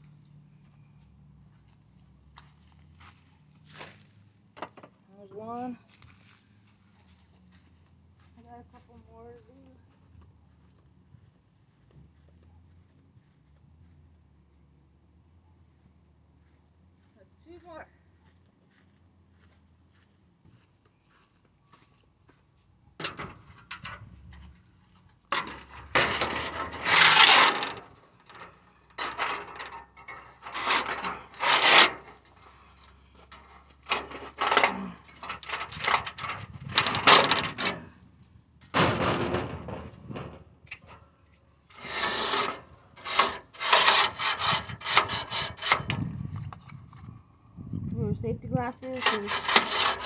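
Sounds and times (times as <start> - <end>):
scraping and rubbing strokes: 25.3 - 38.0, 41.7 - 47.1, 48.6 - 50.0.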